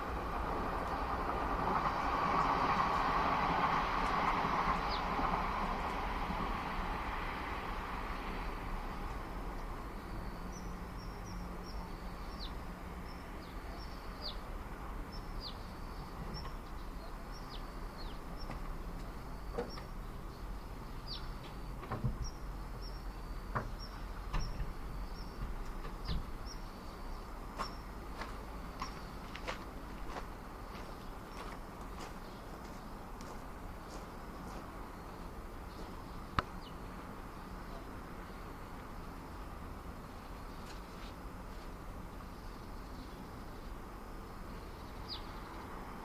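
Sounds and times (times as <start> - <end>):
vehicle passing: 0.0 - 19.4
suburban background hum: 0.0 - 46.0
small bird chirping: 19.6 - 27.9.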